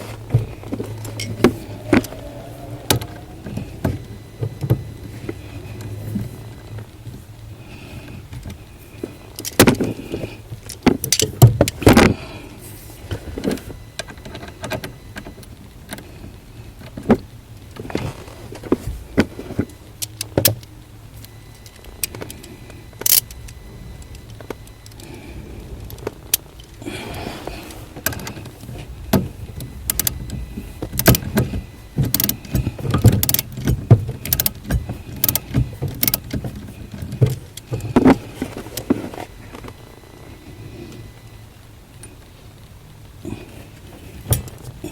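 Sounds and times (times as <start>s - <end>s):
steady low hum: 0.0s - 44.9s.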